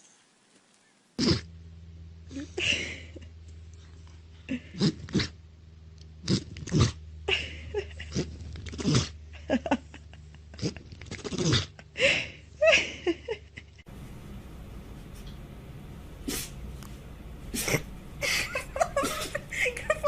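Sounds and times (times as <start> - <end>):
low steady hum: 0.0 - 20.0
pets sneezing and snorting: 16.2 - 16.6, 17.4 - 18.0.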